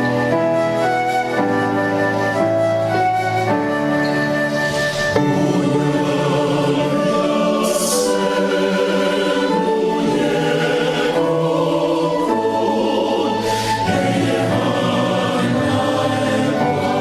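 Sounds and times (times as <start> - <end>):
choir singing a slow hymn: 4.7 - 17.0.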